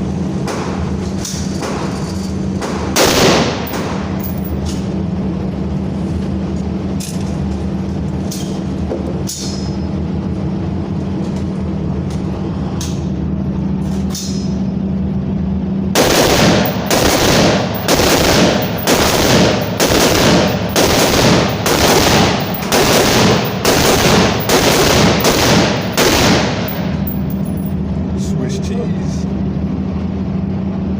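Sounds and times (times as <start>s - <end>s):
steady droning hum: 0.0s - 30.9s
rapid gunfire: 2.6s - 4.3s, 16.0s - 27.4s
gunshots: 2.6s - 4.4s, 16.0s - 27.6s.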